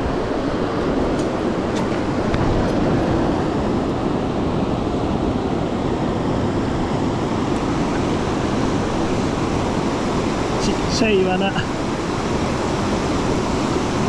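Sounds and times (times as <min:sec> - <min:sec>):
mountain stream water rushing: 0:00.0 - 0:14.0.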